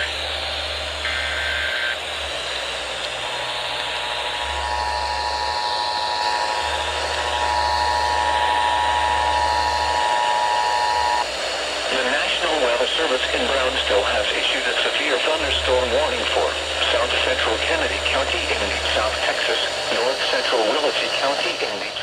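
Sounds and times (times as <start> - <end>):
radio static: 0.0 - 22.0
data tones burst: 1.0 - 2.0, 3.4 - 11.3.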